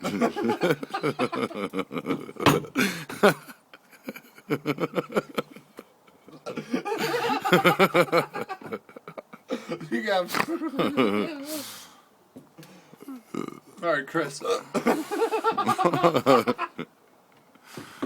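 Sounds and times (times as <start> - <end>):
people laughing: 0.0 - 11.5, 14.8 - 16.9.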